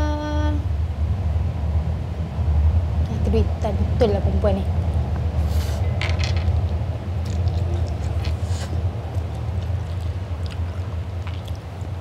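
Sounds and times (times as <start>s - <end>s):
low hum: 0.0s - 12.0s
wet eating smacks and slurps: 6.6s - 12.0s.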